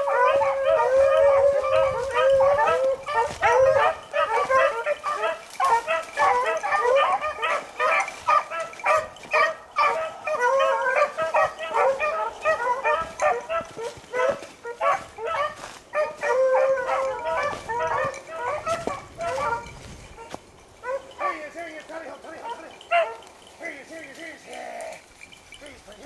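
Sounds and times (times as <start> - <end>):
hounds baying: 0.0 - 26.0.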